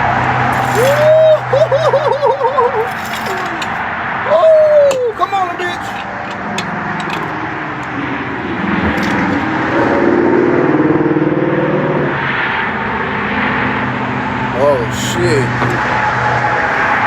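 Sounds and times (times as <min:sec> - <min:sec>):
road noise: 0:00.0 - 0:17.0
car engine running: 0:05.0 - 0:17.0.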